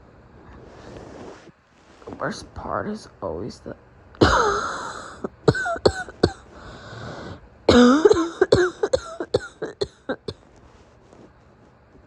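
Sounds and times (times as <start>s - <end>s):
woman coughing: 4.2s - 6.5s, 7.7s - 10.4s.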